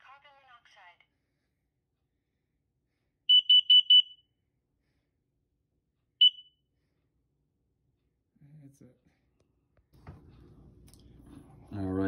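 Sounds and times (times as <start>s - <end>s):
smoke alarm beeping: 3.3s - 4.3s, 6.2s - 6.6s.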